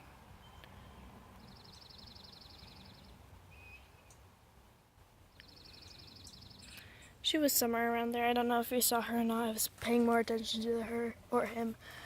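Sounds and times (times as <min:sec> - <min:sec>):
outdoor background noise: 0:00.0 - 0:12.0
faint bird trill: 0:00.4 - 0:04.2, 0:05.4 - 0:07.1
short bird chirp: 0:01.6 - 0:04.2.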